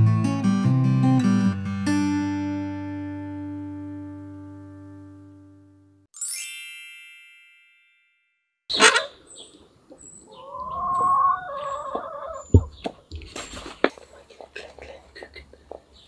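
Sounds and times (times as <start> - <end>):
acoustic guitar intro music: 0.0 - 6.1
bright chime-like tone: 6.2 - 8.6.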